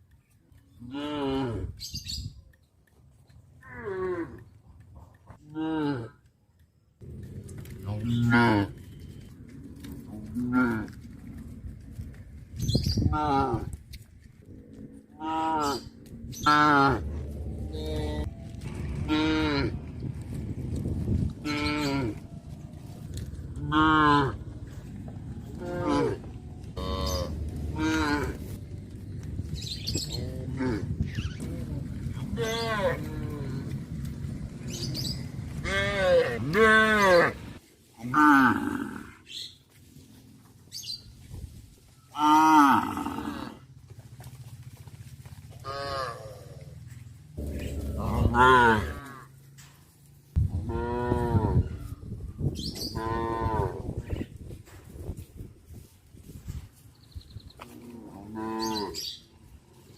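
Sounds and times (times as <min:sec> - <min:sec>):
cattle mooing: 0:07.5 - 0:09.0, 0:14.5 - 0:19.9, 0:23.6 - 0:24.6, 0:25.6 - 0:28.6, 0:32.2 - 0:34.6, 0:35.5 - 0:39.2, 0:42.2 - 0:43.6, 0:45.6 - 0:46.8, 0:47.4 - 0:49.4, 0:50.6 - 0:51.6, 0:57.8 - 0:59.2.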